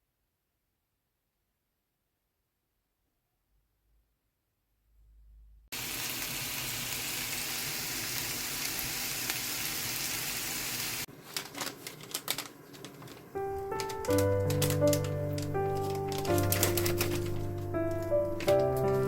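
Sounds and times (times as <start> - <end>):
food sizzling in frying pan: 5.8 - 11.1.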